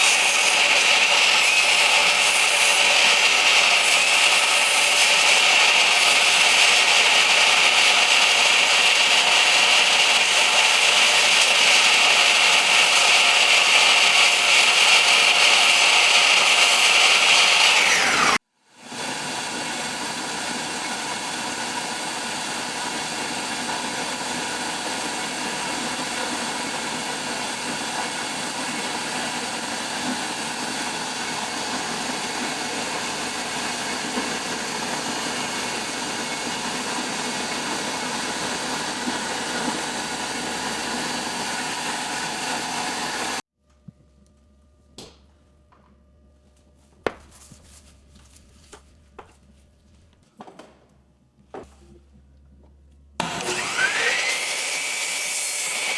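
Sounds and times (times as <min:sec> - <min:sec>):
power saw high whine: 0:00.0 - 0:43.4, 0:53.2 - 0:55.9.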